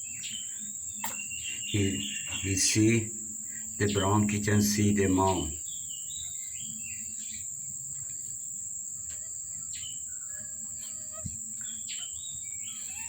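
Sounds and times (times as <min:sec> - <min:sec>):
crickets trilling: 0:00.0 - 0:13.0
short bird chirps: 0:00.2 - 0:02.4.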